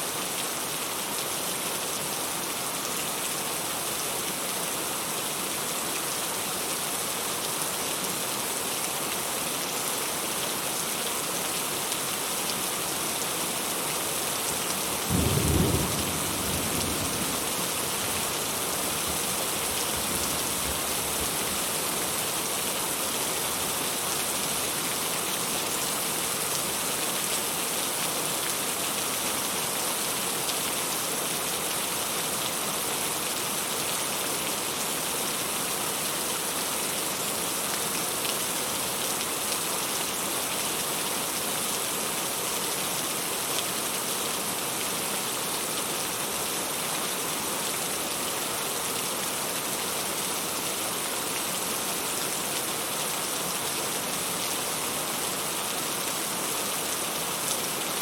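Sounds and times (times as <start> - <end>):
heavy rain falling: 0.0 - 58.0
low rumble of thunder: 15.1 - 17.8.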